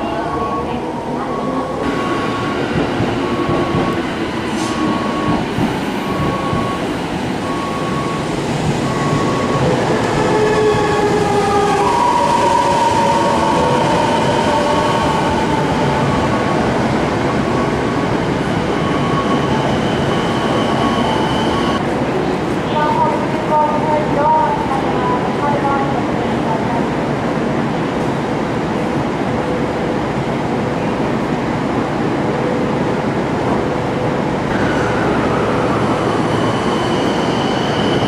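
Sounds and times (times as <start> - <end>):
train wheels rumbling on rails: 1.4 - 38.0.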